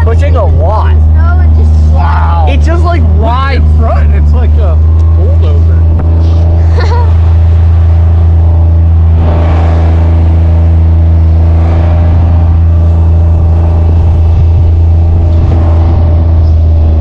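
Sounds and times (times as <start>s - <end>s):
engine droning: 0.0s - 17.0s.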